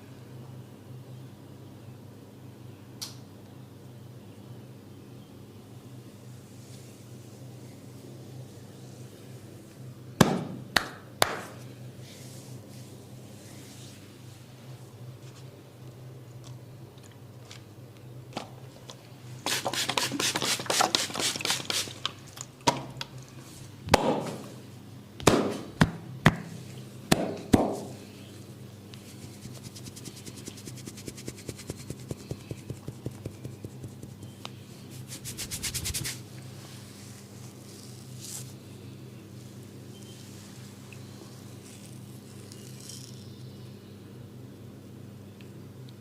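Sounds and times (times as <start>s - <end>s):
hands drumming massage strokes: 29.1s - 34.4s.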